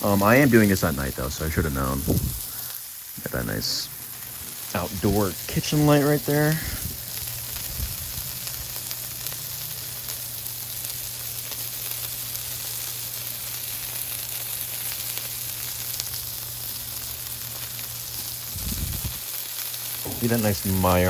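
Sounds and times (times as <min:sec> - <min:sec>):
food sizzling on a griddle: 0:00.0 - 0:21.0.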